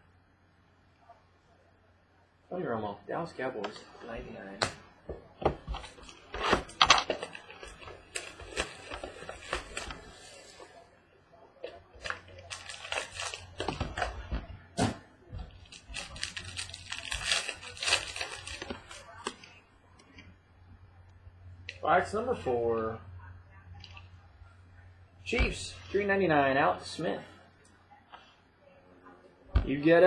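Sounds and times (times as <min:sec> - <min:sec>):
plastic packaging crinkling: 0:05.7 - 0:10.8, 0:11.6 - 0:14.3, 0:15.5 - 0:19.6.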